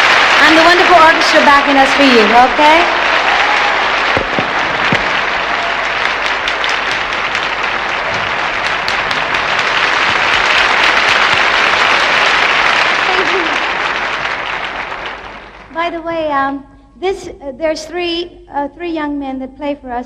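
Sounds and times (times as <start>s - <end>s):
audience applauding: 0.0s - 15.7s.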